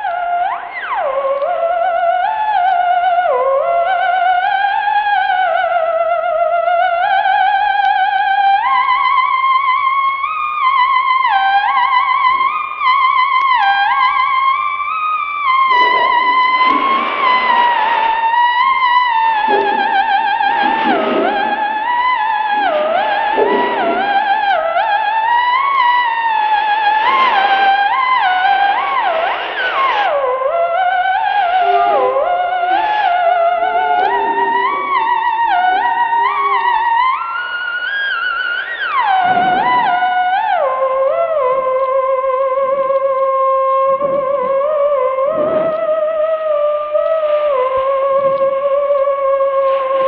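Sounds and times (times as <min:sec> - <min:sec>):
wavering tone with vibrato: 0:15.5 - 0:41.5.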